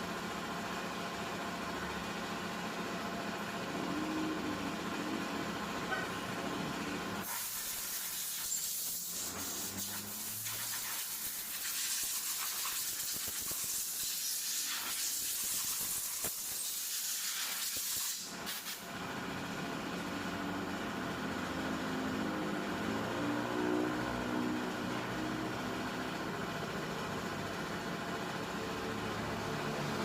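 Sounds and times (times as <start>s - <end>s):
hiss of rushing air: 7.2s - 18.8s.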